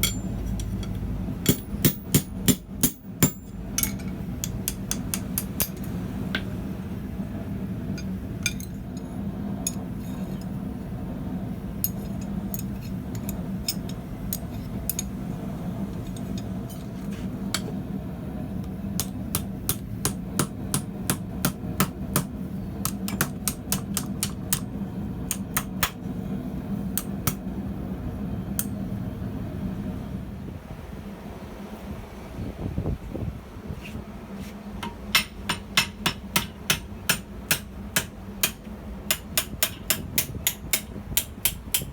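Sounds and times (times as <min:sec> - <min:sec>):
hammer striking steel on anvil: 0:00.0 - 0:06.5, 0:19.0 - 0:24.7, 0:25.3 - 0:26.0, 0:34.8 - 0:41.9
steady low hum: 0:00.0 - 0:41.9.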